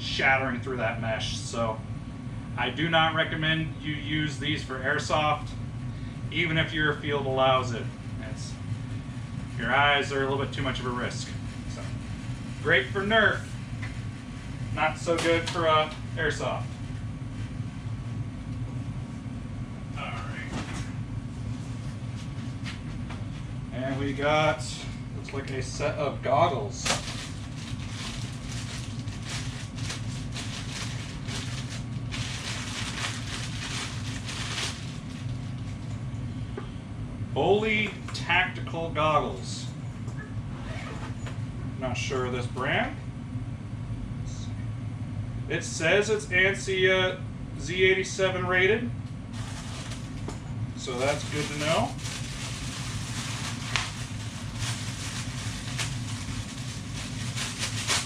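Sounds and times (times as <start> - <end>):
low room hum: 0.0 - 58.0
plastic packaging crinkling: 26.8 - 35.9, 49.3 - 50.2, 50.9 - 58.0.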